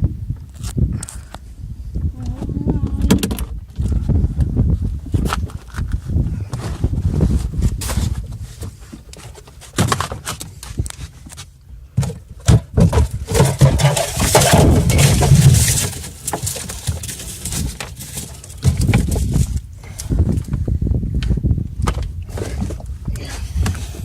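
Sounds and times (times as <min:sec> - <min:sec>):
rattling and scraping: 0:02.2 - 0:24.0
gear clattering and knocking: 0:12.0 - 0:23.9.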